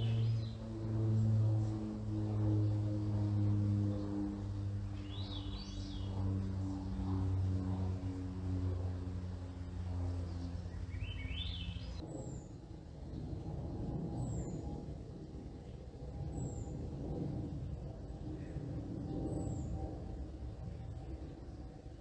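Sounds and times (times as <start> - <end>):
steady low drone: 0.0 - 12.1.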